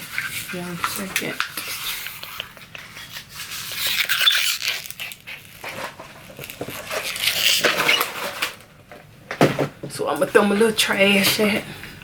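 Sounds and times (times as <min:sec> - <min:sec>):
paper or plastic rustling: 0:00.0 - 0:08.7.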